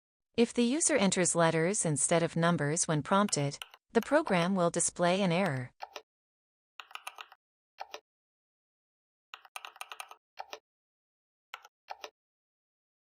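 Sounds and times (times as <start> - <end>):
computer keyboard typing: 3.2 - 4.6, 5.4 - 6.0, 6.8 - 8.0, 9.4 - 10.6, 11.6 - 12.2.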